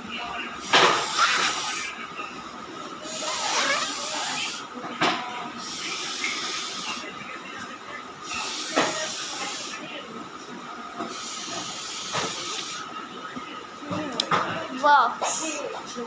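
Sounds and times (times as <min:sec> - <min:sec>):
air hissing through spray pen: 0:00.7 - 0:01.9, 0:03.0 - 0:04.6, 0:05.6 - 0:07.0, 0:08.2 - 0:09.8, 0:11.1 - 0:12.9.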